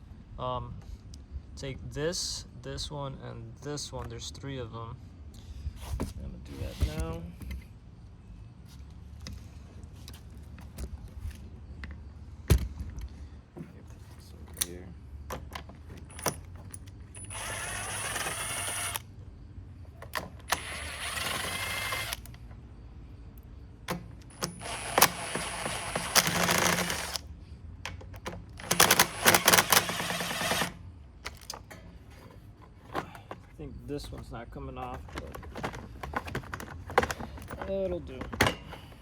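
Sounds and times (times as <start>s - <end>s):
socket tool rapid clicking: 28.6s - 30.8s.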